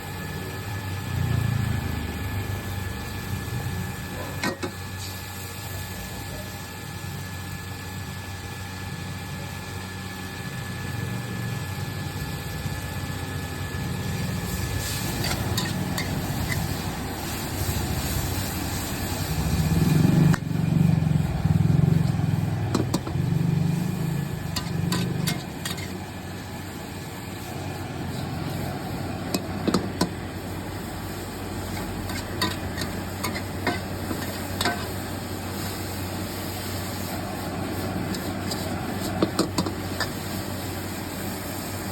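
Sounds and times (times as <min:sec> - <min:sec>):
vehicle engine rumbling: 0:12.4 - 0:41.1.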